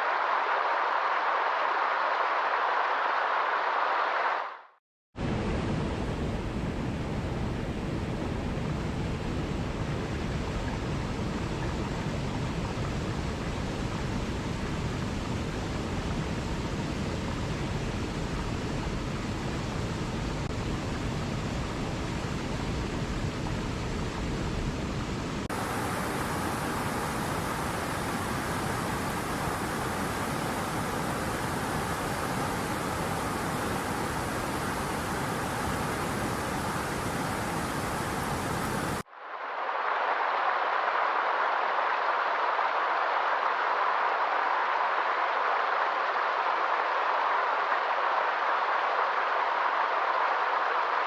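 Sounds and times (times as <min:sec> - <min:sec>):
running water rushing: 0:25.4 - 0:39.0.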